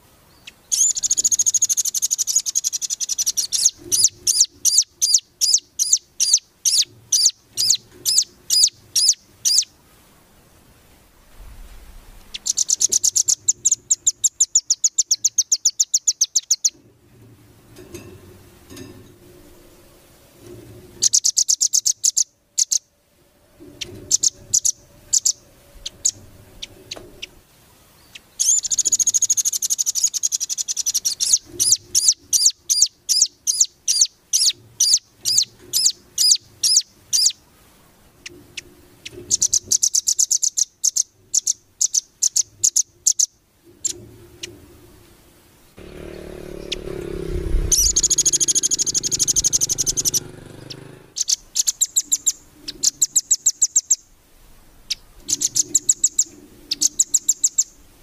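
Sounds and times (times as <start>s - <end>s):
songbird chattering song: 0.0s - 9.8s, 11.7s - 16.8s, 21.0s - 22.9s, 23.6s - 37.4s, 38.2s - 44.6s, 45.6s - 54.2s, 54.8s - 58.0s
low rumble: 11.1s - 12.4s, 45.8s - 50.6s.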